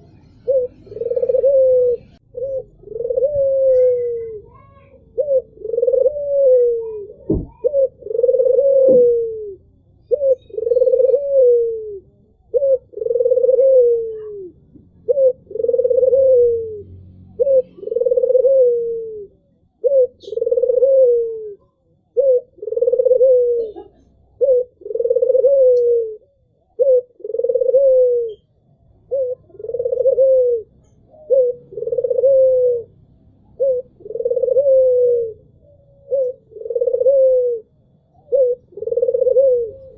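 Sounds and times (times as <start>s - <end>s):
dove cooing: 0.0s - 39.9s.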